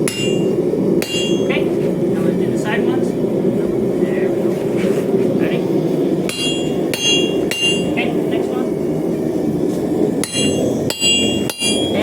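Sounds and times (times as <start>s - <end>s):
hammer ringing on anvil: 0.0s - 1.5s, 6.3s - 8.0s, 10.2s - 12.0s.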